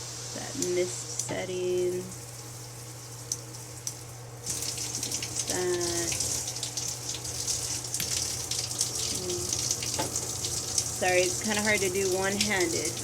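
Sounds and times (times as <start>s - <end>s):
shower head water spraying: 0.0s - 13.0s.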